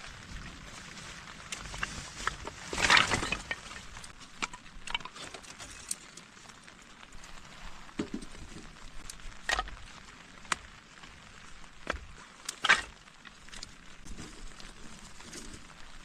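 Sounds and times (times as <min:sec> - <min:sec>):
rain hissing: 0:00.0 - 0:16.0.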